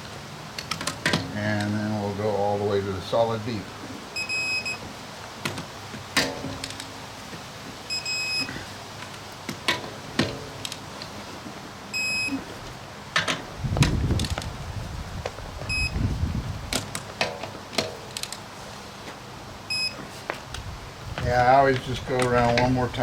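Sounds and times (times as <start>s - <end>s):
torque wrench high beeps: 4.2s - 4.8s, 7.9s - 8.6s, 12.0s - 12.4s, 15.7s - 16.0s, 19.7s - 20.0s.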